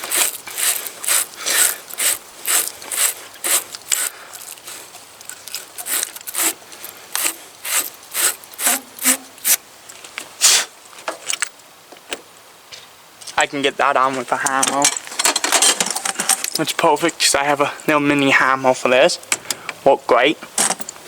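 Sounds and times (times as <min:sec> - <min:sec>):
brush scraping battery terminal: 0:00.0 - 0:09.6.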